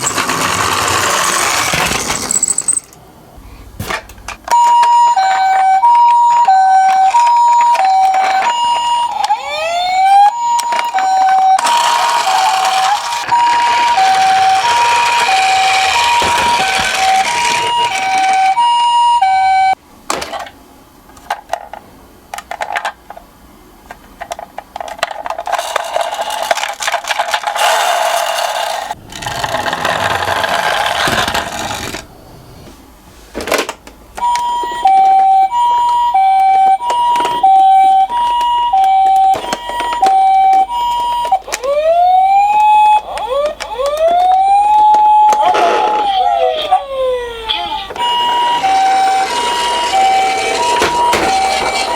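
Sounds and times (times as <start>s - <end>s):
miniature cars rattling down slope: 0.0s - 2.9s, 10.8s - 18.6s, 25.2s - 32.0s, 47.5s - 51.9s
two-tone ambulance siren: 4.5s - 19.8s, 34.2s - 51.9s.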